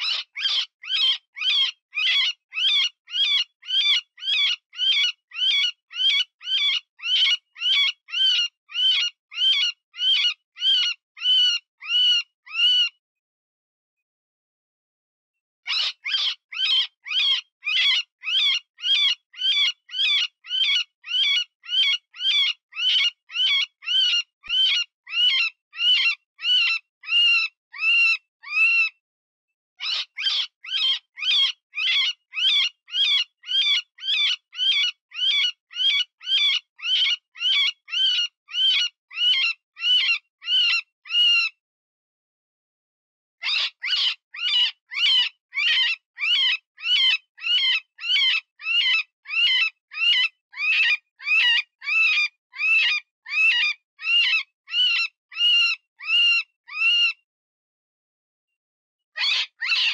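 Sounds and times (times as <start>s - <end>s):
rabbit distress squeals: 59.2s - 59.9s.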